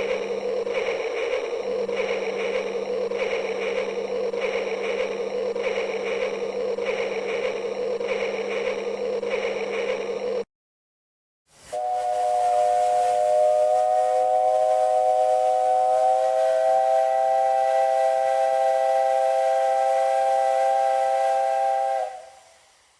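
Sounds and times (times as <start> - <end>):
steam hiss: 11.5 - 22.9
three-chime steam whistle: 11.6 - 22.9.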